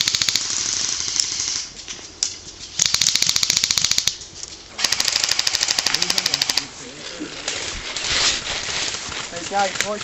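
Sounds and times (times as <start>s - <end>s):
airsoft guns firing on full auto: 0.0s - 1.7s, 2.8s - 4.2s, 4.8s - 6.7s.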